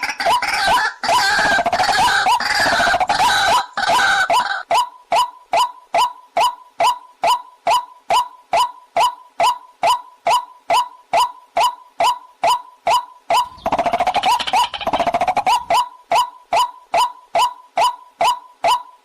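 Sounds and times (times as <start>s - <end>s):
waterhen calls: 0.0s - 5.7s
fast rattling trill: 12.9s - 18.8s.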